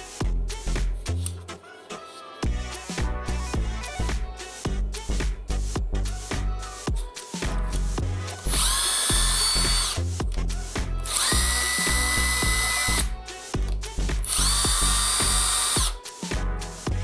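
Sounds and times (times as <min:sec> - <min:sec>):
background music: 0:00.0 - 0:17.0
power tool high whine: 0:08.6 - 0:10.0, 0:11.1 - 0:13.1.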